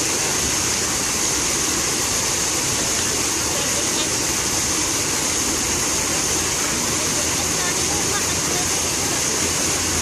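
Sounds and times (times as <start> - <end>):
fountain water splashing: 0.0 - 10.0.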